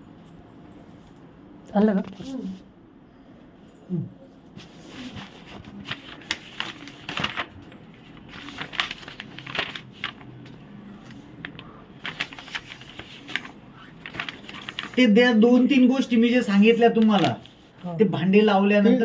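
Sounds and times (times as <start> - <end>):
rustling of objects handled: 4.5 - 15.1.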